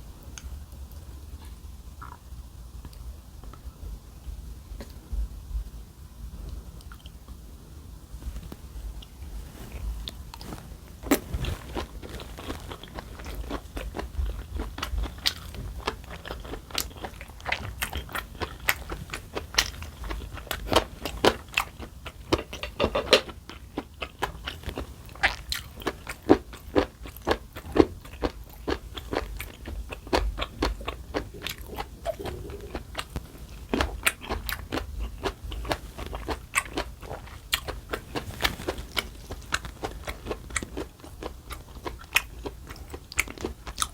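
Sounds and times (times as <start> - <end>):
chewing and crunching food: 8.2 - 43.9.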